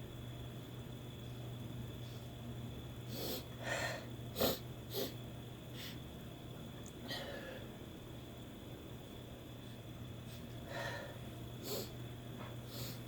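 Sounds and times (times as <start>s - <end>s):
woman sniffing and snorting: 3.1s - 3.5s, 4.3s - 5.2s, 11.6s - 12.0s.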